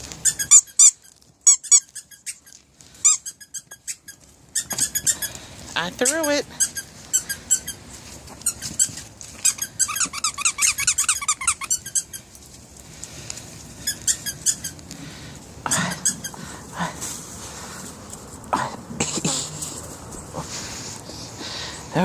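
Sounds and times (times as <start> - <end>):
squeaky dog toy squeaking: 0.2 - 5.3, 6.0 - 7.8, 8.4 - 12.2.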